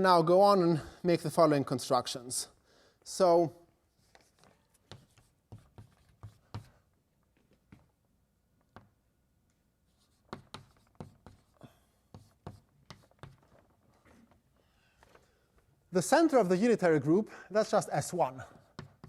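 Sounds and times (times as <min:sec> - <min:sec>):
chalk tapping on a blackboard: 0:04.8 - 0:06.8, 0:10.0 - 0:13.6, 0:18.5 - 0:19.0.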